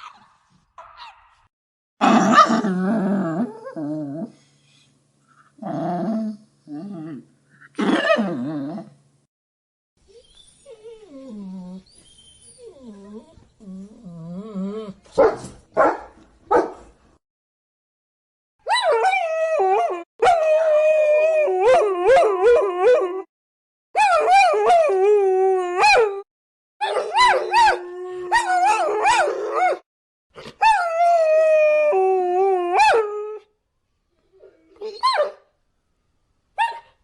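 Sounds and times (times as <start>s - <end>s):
puppy yelping and whining: 34.8s - 35.4s.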